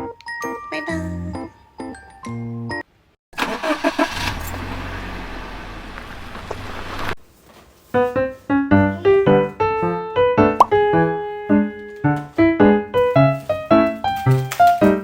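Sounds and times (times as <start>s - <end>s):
car engine cranking and running: 3.4s - 7.2s.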